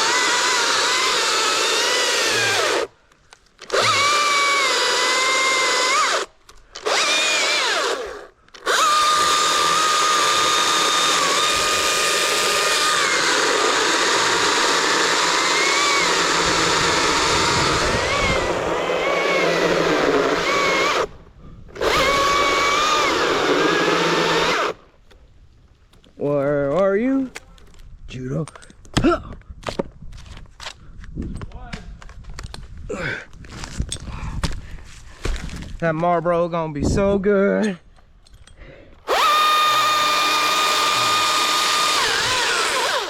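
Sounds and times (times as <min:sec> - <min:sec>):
chainsaw cutting wood: 0:00.0 - 0:03.0, 0:03.6 - 0:24.9, 0:39.0 - 0:43.0.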